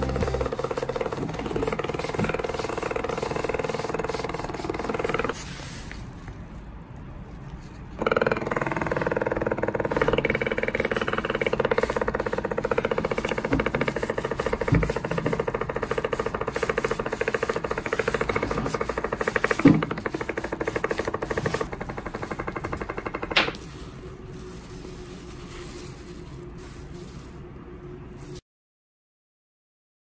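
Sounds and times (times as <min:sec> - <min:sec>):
small motor buzzing rattle: 0:00.0 - 0:05.4, 0:08.0 - 0:23.7.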